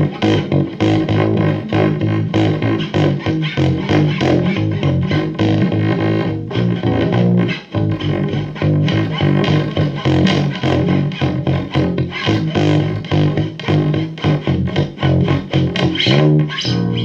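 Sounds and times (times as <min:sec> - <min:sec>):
distorted guitar instrumental music: 0:00.0 - 0:17.0.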